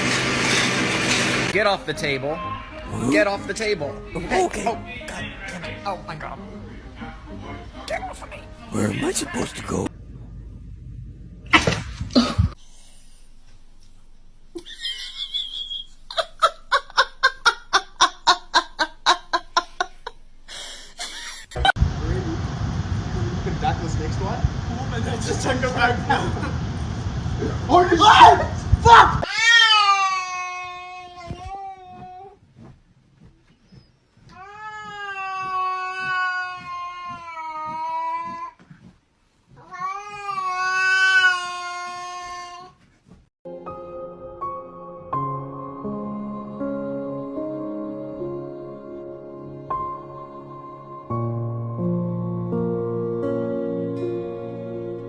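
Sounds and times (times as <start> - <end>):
person giving laugh-like pulses: 14.6 - 21.8.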